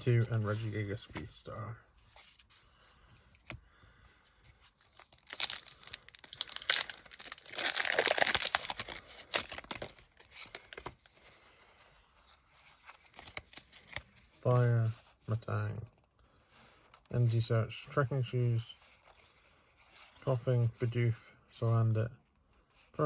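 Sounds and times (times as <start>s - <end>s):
foil wrapper tearing and crinkling: 5.0s - 11.0s.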